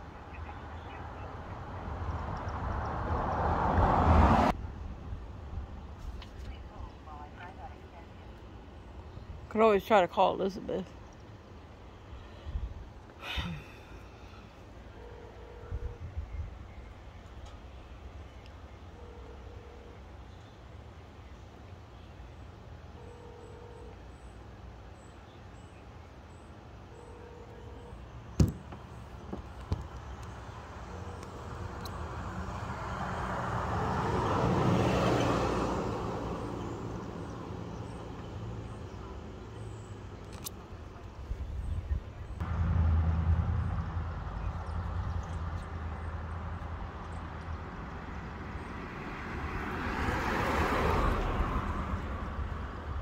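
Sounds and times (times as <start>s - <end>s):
low street traffic rumble: 0.0s - 53.0s
vehicle passing: 0.2s - 4.6s, 29.9s - 40.0s, 42.3s - 53.0s
sharp loud knock: 28.4s - 28.8s.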